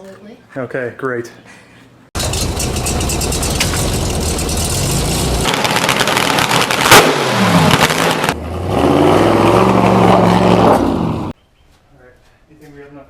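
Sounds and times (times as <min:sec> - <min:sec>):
car engine revving: 0:02.2 - 0:11.3.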